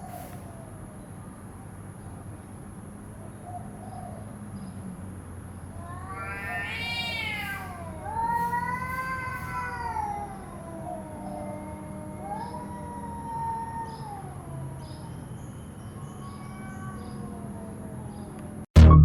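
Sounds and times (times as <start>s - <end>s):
cat meowing: 5.8s - 17.8s.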